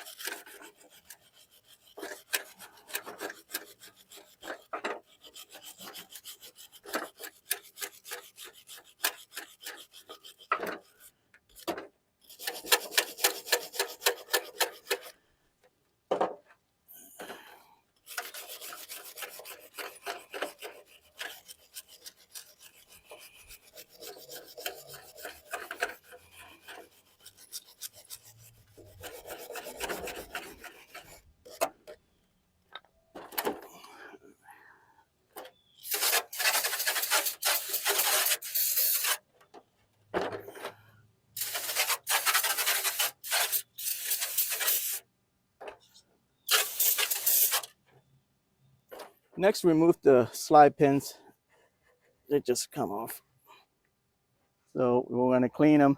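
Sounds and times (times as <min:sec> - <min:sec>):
wire brush scrubbing metal: 0:00.0 - 0:11.1, 0:12.3 - 0:15.1, 0:18.0 - 0:31.7, 0:35.8 - 0:39.2, 0:41.4 - 0:45.0, 0:46.5 - 0:47.7.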